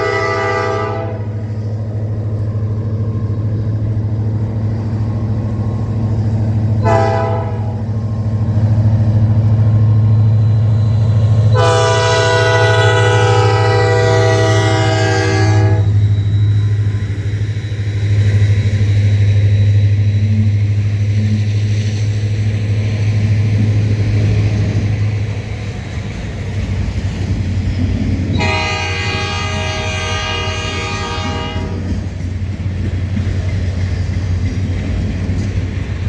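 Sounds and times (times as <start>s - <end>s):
locomotive air horn blasts: 0.0s - 1.5s, 6.8s - 7.9s, 11.5s - 16.0s, 28.3s - 32.0s
diesel engine drone: 0.0s - 36.0s.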